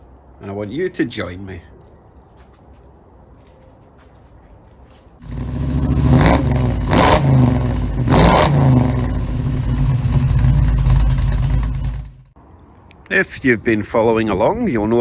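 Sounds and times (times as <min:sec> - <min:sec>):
pickup truck engine revving: 0:05.2 - 0:12.3.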